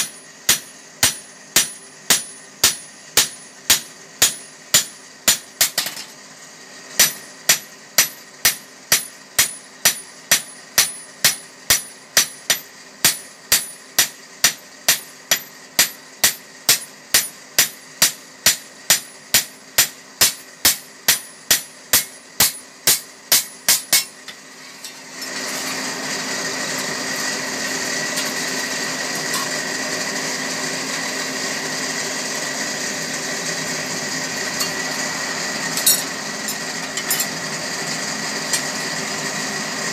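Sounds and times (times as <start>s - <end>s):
hammer striking hot metal: 0.0s - 6.0s, 7.0s - 24.4s, 28.1s - 29.7s, 35.7s - 37.3s
loud steady machine whir: 0.0s - 39.9s
low hum of blower: 0.0s - 39.9s.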